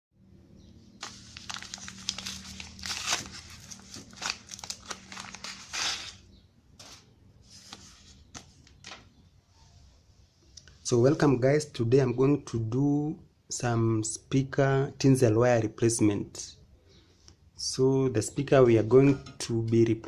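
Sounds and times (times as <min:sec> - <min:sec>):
rustling and crinkling: 0:01.0 - 0:09.1.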